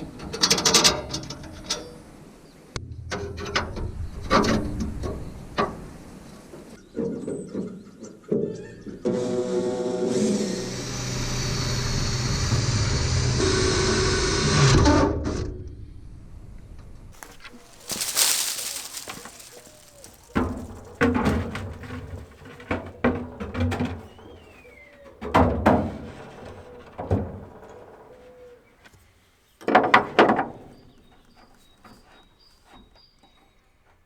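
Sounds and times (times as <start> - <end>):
parts knocking and clattering: 17.2 - 28.5.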